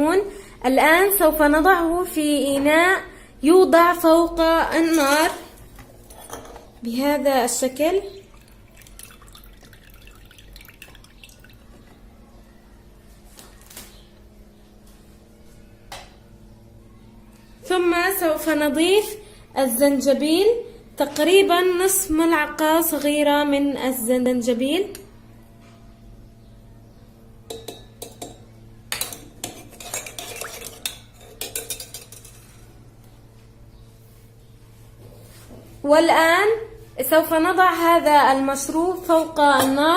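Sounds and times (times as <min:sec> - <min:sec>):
juice dripping into a pot: 0:08.2 - 0:11.9
teaspoon clinking against a pot: 0:27.5 - 0:32.4.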